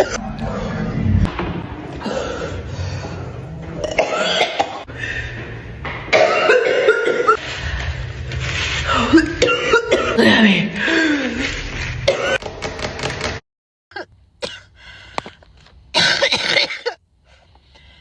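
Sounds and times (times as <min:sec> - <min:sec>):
people coughing: 0:00.0 - 0:01.1, 0:01.7 - 0:07.4, 0:08.9 - 0:12.4, 0:16.0 - 0:17.0.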